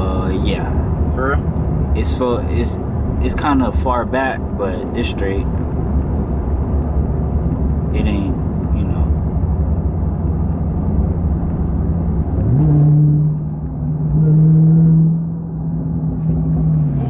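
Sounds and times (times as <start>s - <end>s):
car engine rumbling in cabin: 0.0s - 17.0s
deep steady drone: 0.0s - 17.0s
road noise: 0.0s - 17.0s.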